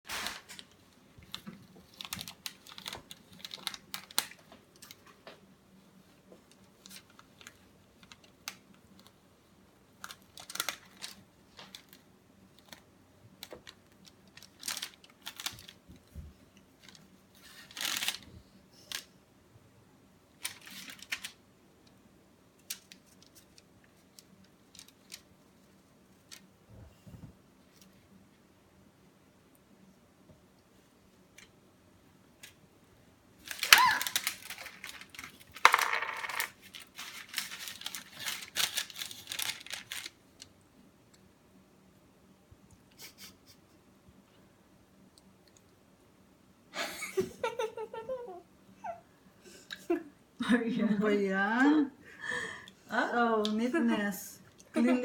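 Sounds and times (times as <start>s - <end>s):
faint steady hum: 0.1s - 55.0s
small objects clicking and tapping: 35.6s - 37.1s.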